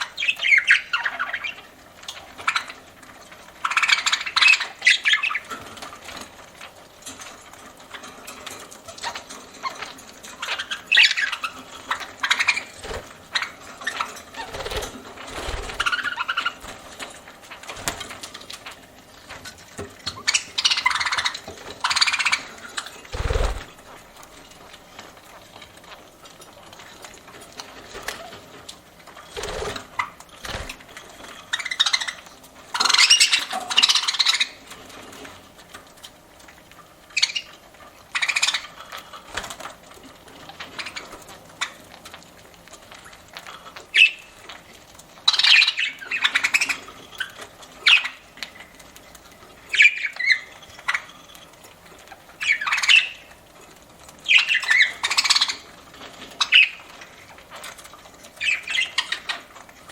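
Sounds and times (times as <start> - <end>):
budgerigars chirping and squawking: 0.0 - 1.7, 3.6 - 5.6, 9.0 - 16.8, 20.1 - 23.8, 29.4 - 34.7, 37.2 - 38.9, 40.7 - 41.7, 44.0 - 44.3, 45.3 - 48.3, 49.7 - 51.4, 52.4 - 53.3, 54.2 - 55.7, 56.3 - 56.9, 58.4 - 59.5.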